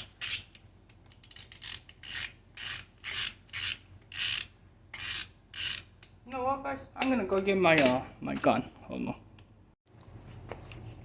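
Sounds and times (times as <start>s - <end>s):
ratchet wrench clicking: 1.1s - 5.9s.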